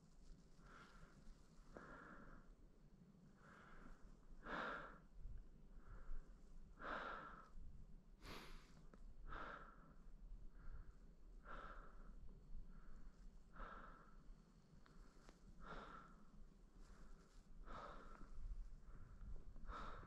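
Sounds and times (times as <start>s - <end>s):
person breathing hard: 0.6s - 2.6s, 3.4s - 7.6s, 8.2s - 20.0s.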